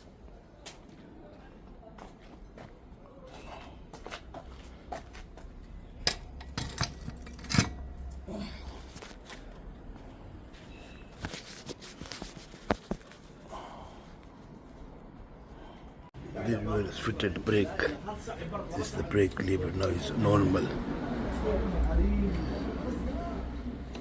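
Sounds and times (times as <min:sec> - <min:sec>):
hand tools and metal parts clinking: 0:06.0 - 0:09.2.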